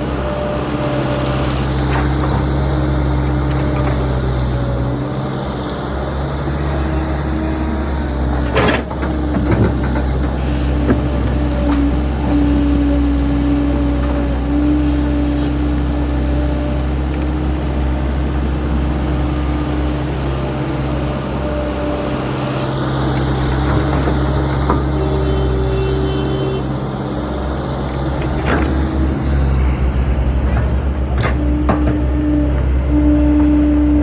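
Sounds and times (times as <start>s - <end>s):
well drilling machine engine drone: 0.0s - 34.0s
whining tone: 23.5s - 26.7s, 27.3s - 34.0s.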